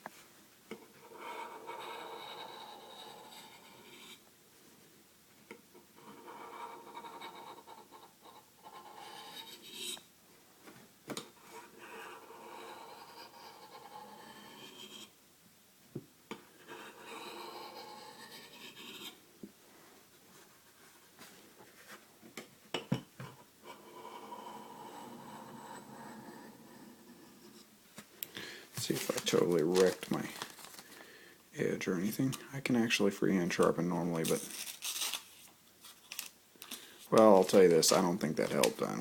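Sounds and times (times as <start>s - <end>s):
knife scraping on sharpening stone: 8.8s - 10.0s, 11.8s - 15.1s, 16.6s - 19.2s.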